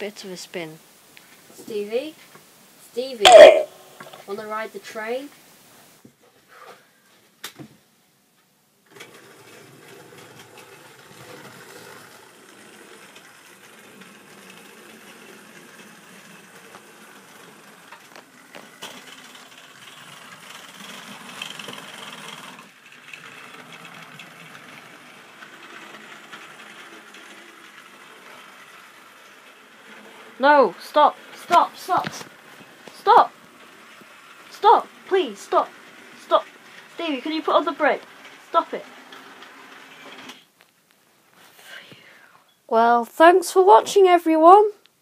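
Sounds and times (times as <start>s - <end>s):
wheels rattling over rails: 8.8s - 40.6s.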